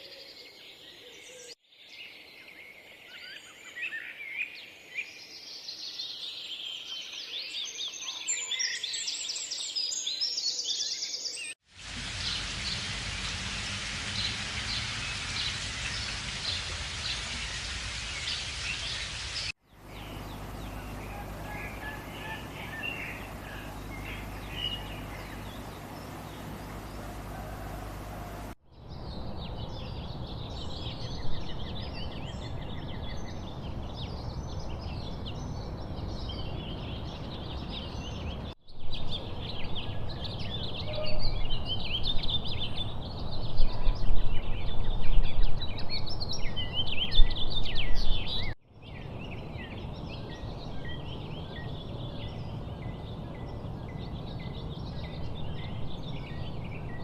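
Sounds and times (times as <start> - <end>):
birds chirping and trilling: 12.2 - 57.0
low rumble: 19.8 - 28.6.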